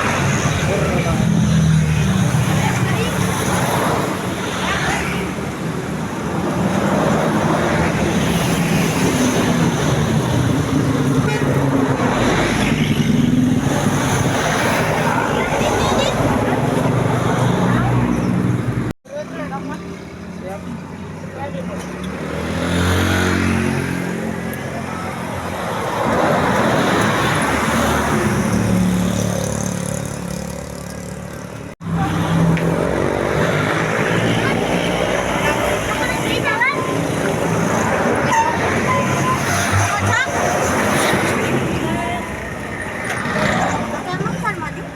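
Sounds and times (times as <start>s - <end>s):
traffic noise: 0.0s - 44.9s
multi-tone bus horn: 11.2s - 11.7s, 38.2s - 39.6s.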